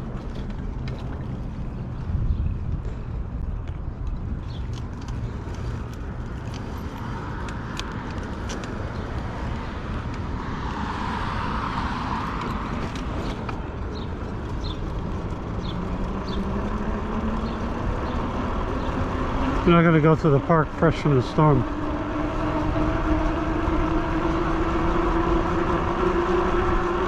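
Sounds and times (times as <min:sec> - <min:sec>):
low wind rumble: 0:00.0 - 0:27.0
road traffic: 0:00.0 - 0:27.0
vehicle passing: 0:04.7 - 0:27.0
rising motor whine: 0:10.0 - 0:27.0.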